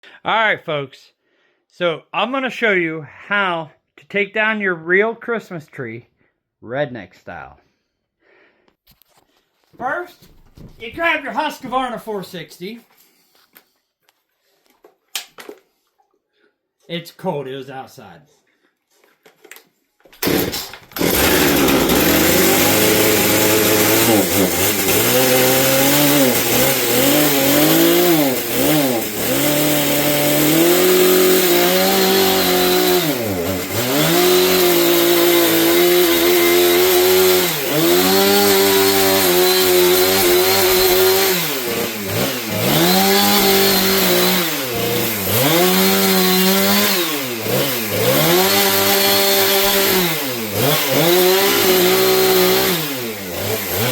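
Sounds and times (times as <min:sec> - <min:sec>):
chainsaw cutting at high revs: 0:20.2 - 0:53.9.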